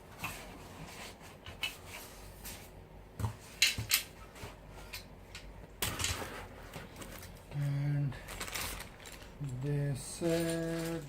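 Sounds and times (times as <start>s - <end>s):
folding table parts clicking and knocking: 3.2s - 7.3s.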